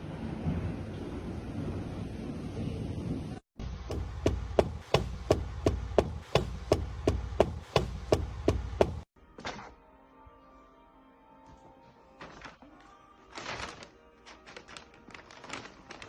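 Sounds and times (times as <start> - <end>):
rapid sharp knocks: 3.6 - 9.1.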